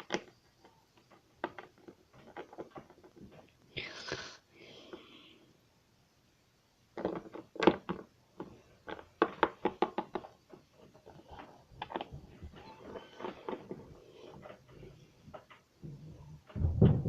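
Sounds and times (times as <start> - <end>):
plastic toys set on hard surface: 6.9 - 15.6.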